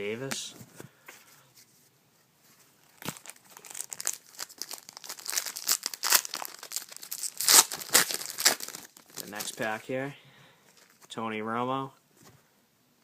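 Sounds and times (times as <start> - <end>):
wrapper crinkling and tearing: 2.8 - 9.8.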